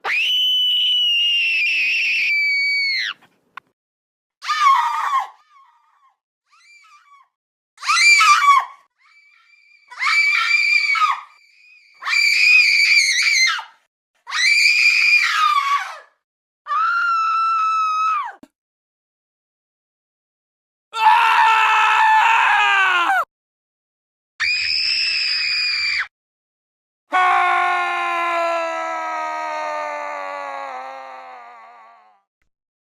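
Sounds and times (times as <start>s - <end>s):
shrill high scream: 0.0s - 3.3s, 4.4s - 18.4s, 21.0s - 23.3s, 24.4s - 26.1s, 27.1s - 32.2s
click: 3.5s - 3.7s.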